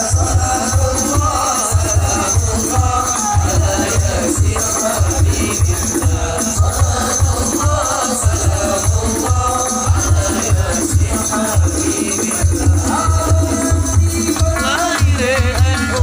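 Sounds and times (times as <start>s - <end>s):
frame drums beating: 0.0s - 16.0s
jingling tambourine percussion: 0.0s - 16.0s
voices singing devotional songs: 0.0s - 16.0s.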